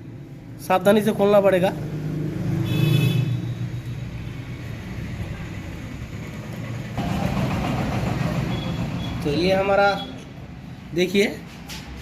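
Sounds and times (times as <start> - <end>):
rough loud noise: 7.0 - 9.0.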